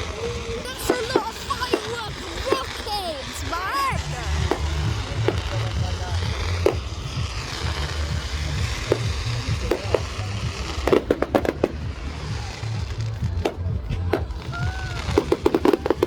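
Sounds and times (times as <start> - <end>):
fireworks bangs: 0.0 - 16.0
low rumble: 3.2 - 16.0.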